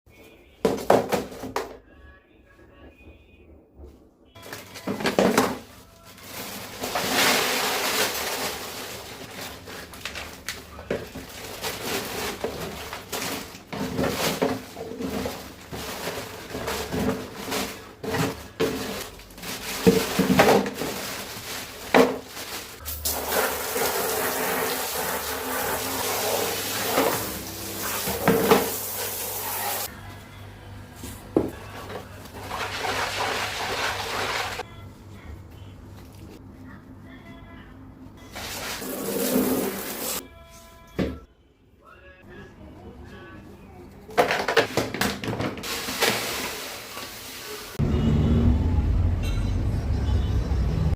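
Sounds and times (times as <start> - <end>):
litter scooped and poured: 11.4 - 29.9, 32.4 - 34.6, 38.4 - 40.2, 45.6 - 47.8.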